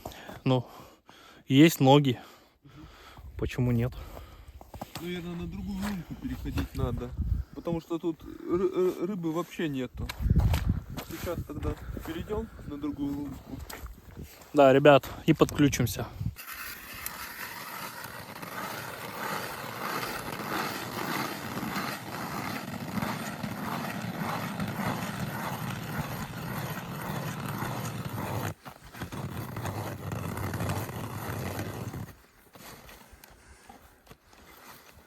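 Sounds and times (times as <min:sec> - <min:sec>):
ice auger grinding: 0:16.4 - 0:32.7.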